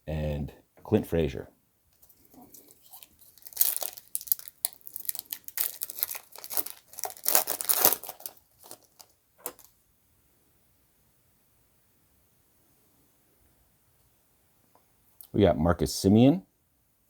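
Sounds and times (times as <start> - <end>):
card pack wrapper tearing and crinkling: 2.4 - 9.7.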